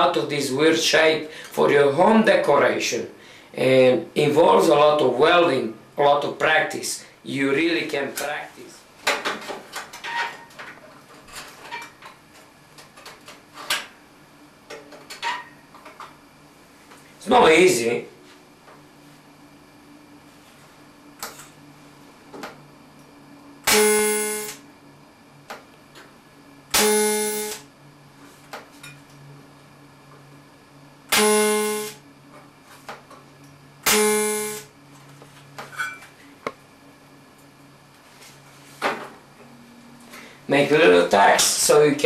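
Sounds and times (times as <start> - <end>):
faint steady hum: 0.0 - 42.0
welding arc buzz: 23.6 - 24.7, 26.6 - 27.8, 31.1 - 32.0, 33.8 - 34.8.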